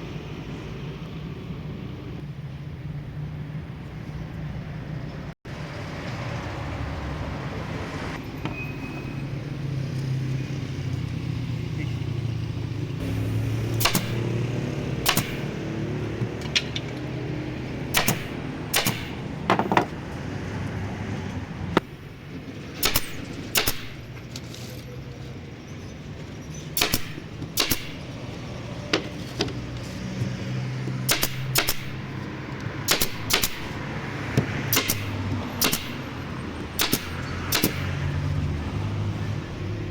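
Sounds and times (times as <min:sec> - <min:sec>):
sharp knocks: 0:13.8 - 0:14.4, 0:15.0 - 0:15.6, 0:17.9 - 0:20.0, 0:22.8 - 0:24.1, 0:26.8 - 0:28.1, 0:30.9 - 0:32.2, 0:32.9 - 0:36.1, 0:36.8 - 0:38.0.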